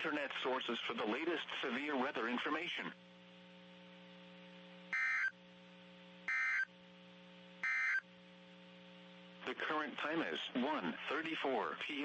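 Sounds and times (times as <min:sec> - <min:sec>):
faint steady hum: 0:00.0 - 0:12.0
warbling digital data tones: 0:04.9 - 0:05.3, 0:06.3 - 0:06.7, 0:07.6 - 0:08.0.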